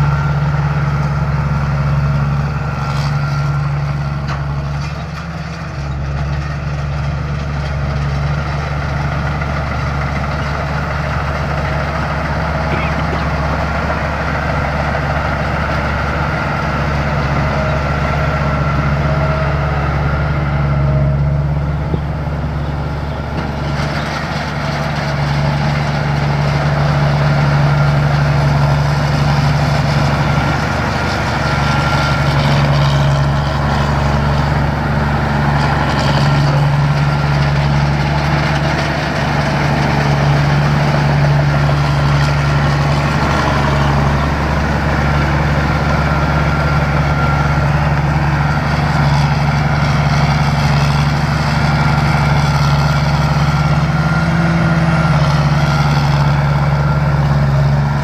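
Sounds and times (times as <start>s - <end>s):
diesel engine running: 0.0s - 58.0s.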